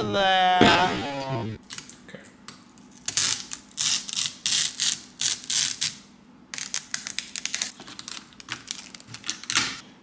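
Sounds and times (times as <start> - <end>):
packaging crinkling and rustling: 6.8 - 9.8.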